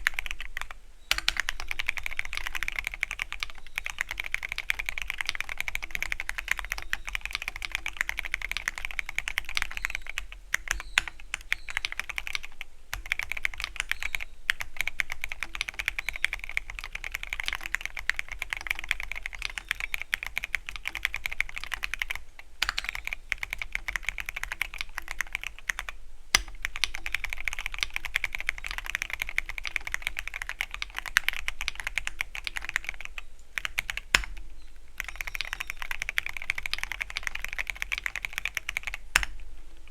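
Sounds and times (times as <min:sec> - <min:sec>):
mechanical keyboard typing: 0:00.0 - 0:34.4, 0:35.0 - 0:39.4.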